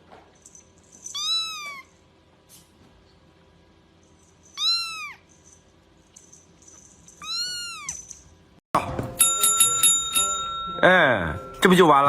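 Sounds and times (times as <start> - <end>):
cat meowing: 1.1 - 2.0, 4.6 - 5.2, 7.2 - 8.0.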